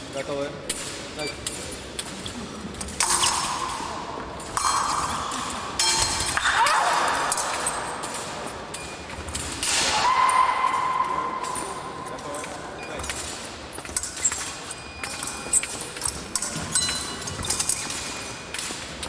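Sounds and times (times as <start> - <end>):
fencing blades clashing: 0.8 - 19.0.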